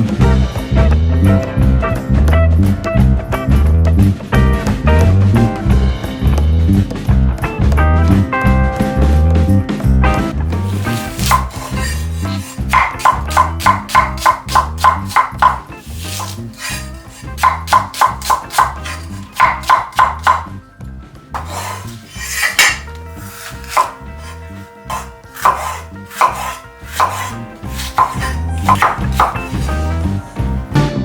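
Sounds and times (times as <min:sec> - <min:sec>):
quick sharp knocks: 0:10.6 - 0:20.5, 0:21.4 - 0:30.2.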